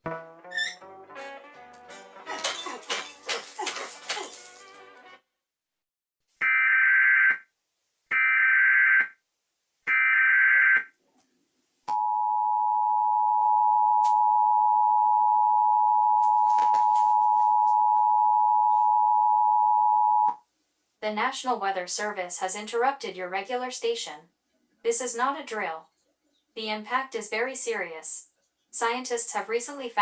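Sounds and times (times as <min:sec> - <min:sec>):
two-tone attention signal: 0:11.9 - 0:20.3.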